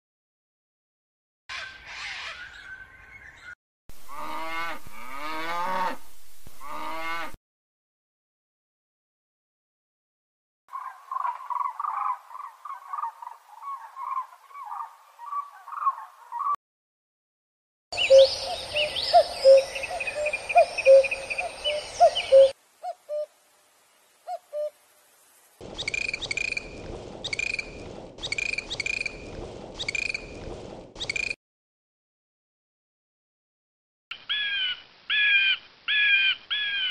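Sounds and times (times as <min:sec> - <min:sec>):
mixed bird calls: 0:01.5 - 0:03.6, 0:10.7 - 0:16.6, 0:18.0 - 0:23.3, 0:25.6 - 0:30.4, 0:31.0 - 0:31.4, 0:34.2 - 0:36.9
evenly spaced single calls: 0:18.0 - 0:23.5, 0:24.2 - 0:25.0, 0:25.6 - 0:30.4, 0:31.0 - 0:31.4, 0:34.1 - 0:36.9
rapid chattering animal calls: 0:25.6 - 0:31.4.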